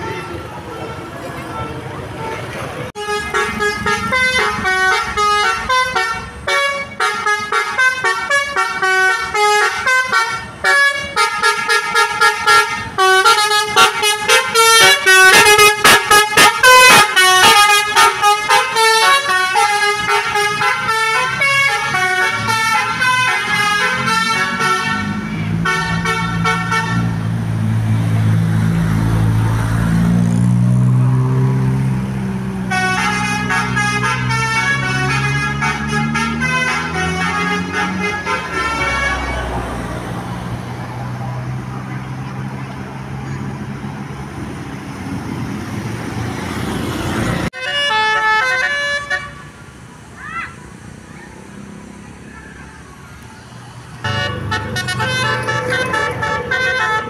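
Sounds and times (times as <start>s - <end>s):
multi-tone bus horn melody: 0.0s - 27.5s, 32.5s - 40.1s, 47.4s - 49.6s, 54.0s - 57.0s
bus engine pulling away: 0.1s - 47.6s, 49.6s - 57.0s.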